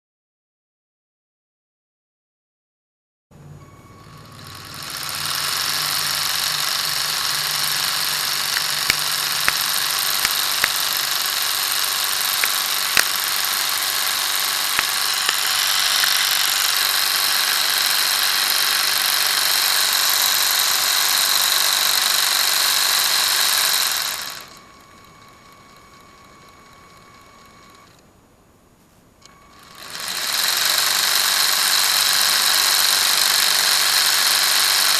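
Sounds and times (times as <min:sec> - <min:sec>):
toy car electric motor whirring: 0:04.0 - 0:28.0, 0:29.3 - 0:34.9
sharp clicks: 0:05.0 - 0:19.7.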